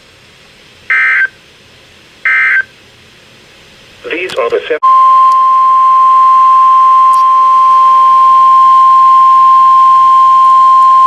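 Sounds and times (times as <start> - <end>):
loud steady high beep: 0.9 - 1.4, 2.3 - 2.7, 4.8 - 11.0.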